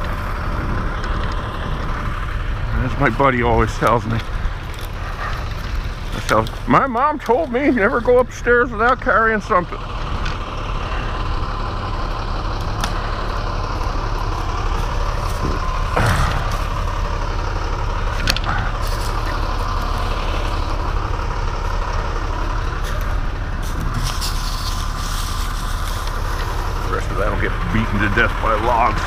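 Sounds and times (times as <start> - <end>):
engine idling: 0.0 - 29.0.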